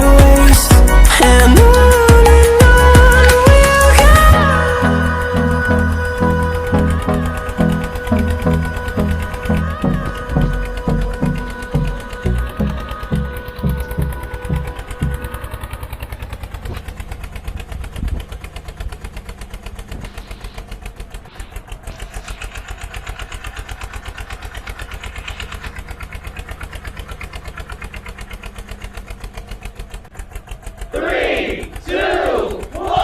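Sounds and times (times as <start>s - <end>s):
diesel engine throbbing: 0.0s - 33.0s
people shouting: 30.9s - 33.0s.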